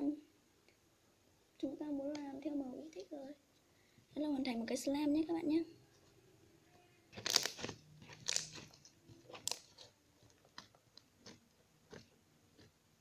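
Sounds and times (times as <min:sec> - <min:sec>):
slime squeezed by hand: 0:07.1 - 0:09.8
wet crackling and popping clicks: 0:07.1 - 0:12.8.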